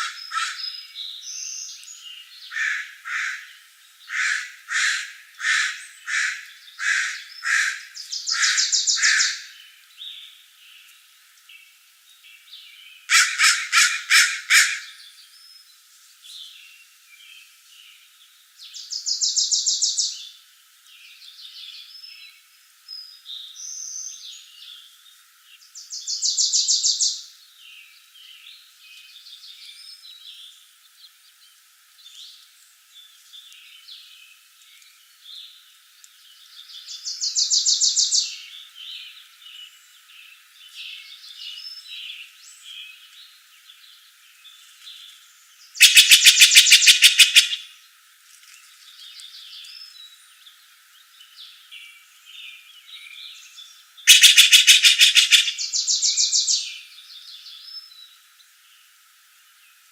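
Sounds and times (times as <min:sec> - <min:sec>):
birds harsh notes: 0:00.0 - 0:00.8, 0:02.5 - 0:09.5, 0:13.1 - 0:15.0, 0:45.8 - 0:47.6, 0:54.1 - 0:56.5
bird fast trills: 0:04.1 - 0:09.5, 0:45.8 - 0:47.7, 0:54.1 - 0:56.6
rapid burst of bird notes: 0:45.8 - 0:47.6, 0:54.1 - 0:55.7.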